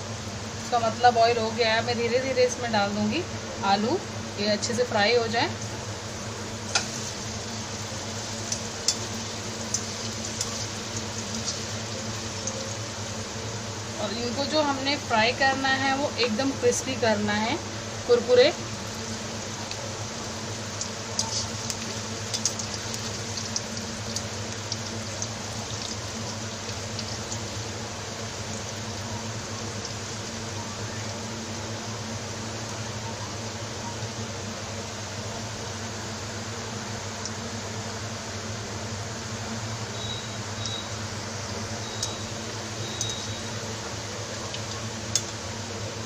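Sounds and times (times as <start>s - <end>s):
steady low hum: 0.0s - 46.0s
potatoes sizzling in hot oil: 3.7s - 32.9s, 39.8s - 45.7s.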